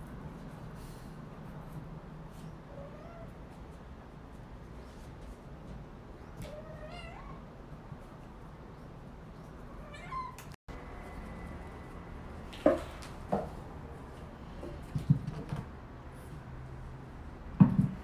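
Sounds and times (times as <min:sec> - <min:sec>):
kitten meowing: 0:09.8 - 0:10.6.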